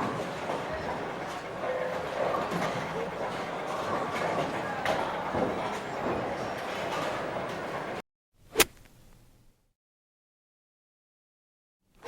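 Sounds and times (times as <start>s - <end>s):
bowling balls rolling: 0.0s - 8.0s
murmur of voices: 0.0s - 8.0s.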